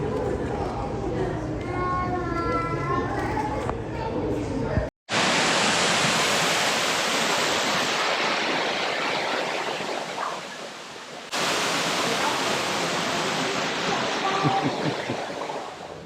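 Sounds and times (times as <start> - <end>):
steady rushing noise: 5.1 - 16.0.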